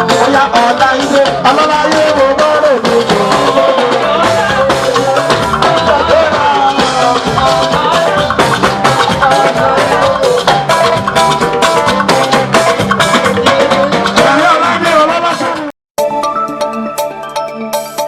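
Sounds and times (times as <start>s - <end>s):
upbeat music with percussion: 0.0s - 18.0s.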